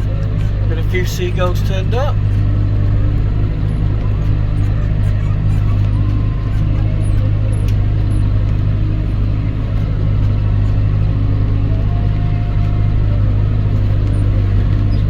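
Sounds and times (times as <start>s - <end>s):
tractor engine under load: 0.0s - 15.0s.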